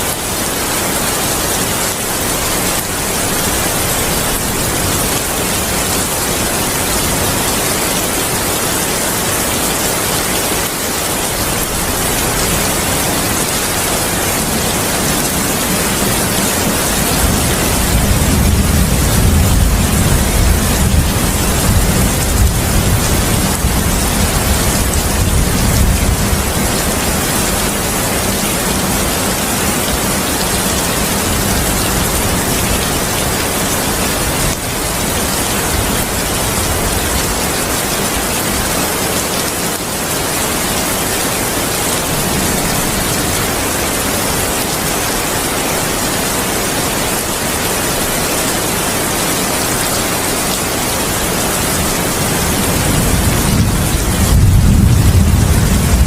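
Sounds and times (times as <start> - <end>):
heavy rain hissing: 0.0 - 56.0
low thunder rumbling: 14.6 - 27.6, 52.6 - 56.0.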